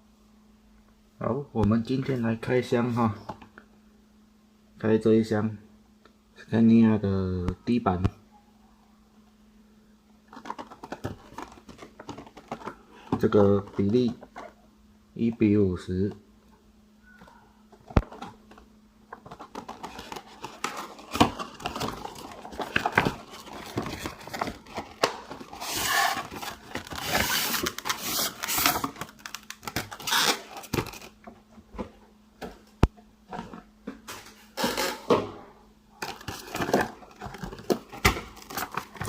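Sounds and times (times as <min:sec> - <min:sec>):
cardboard tearing and rustling: 0:19.2 - 0:31.2, 0:36.0 - 0:39.0.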